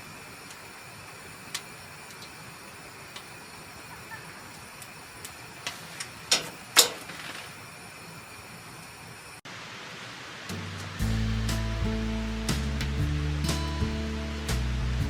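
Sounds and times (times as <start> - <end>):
fire popping: 0.0 - 8.9
wood fire crackling: 0.0 - 9.4.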